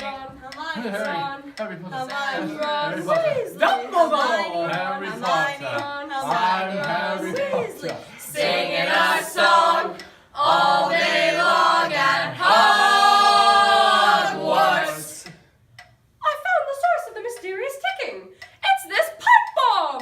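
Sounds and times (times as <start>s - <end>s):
young voices singing a cappella: 0.0s - 15.5s.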